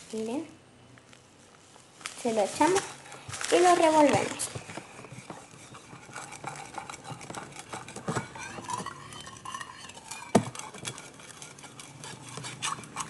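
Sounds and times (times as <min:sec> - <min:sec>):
spoon knocking container: 0:05.2 - 0:09.0, 0:10.2 - 0:11.0.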